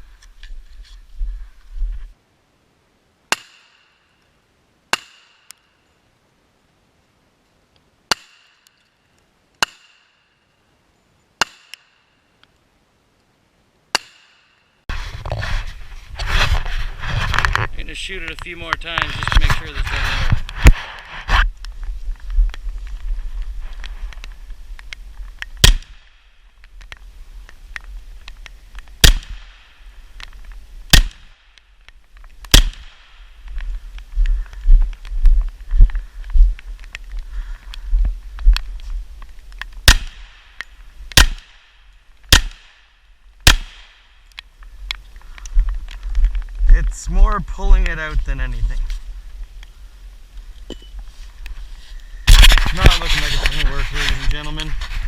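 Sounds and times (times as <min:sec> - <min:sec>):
gunshots hitting steel: 0:25.6 - 0:26.1, 0:29.0 - 0:29.8, 0:30.9 - 0:31.3, 0:32.5 - 0:33.2, 0:39.8 - 0:40.6, 0:41.2 - 0:41.7, 0:42.3 - 0:42.8, 0:43.4 - 0:44.0.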